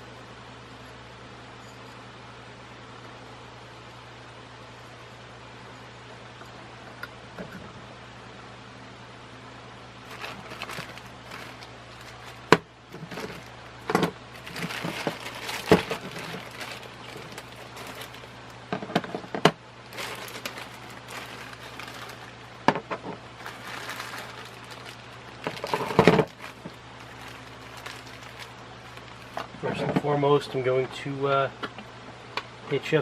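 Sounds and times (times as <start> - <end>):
packaging rustling and crinkling: 10.0 - 18.6, 19.9 - 22.7, 23.4 - 29.5.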